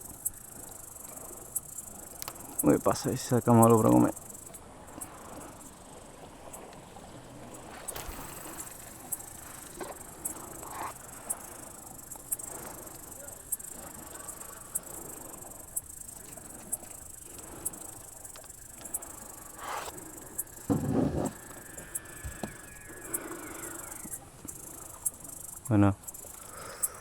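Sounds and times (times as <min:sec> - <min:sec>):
insects chirring: 0:00.0 - 0:27.0
sharp insect chirp: 0:00.0 - 0:27.0
soft knocks: 0:20.6 - 0:21.6.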